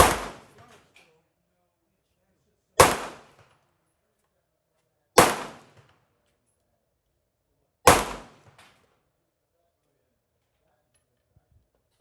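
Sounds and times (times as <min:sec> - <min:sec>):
pistol shots: 0:00.0 - 0:00.6, 0:02.8 - 0:03.4, 0:05.2 - 0:05.9, 0:07.9 - 0:08.7.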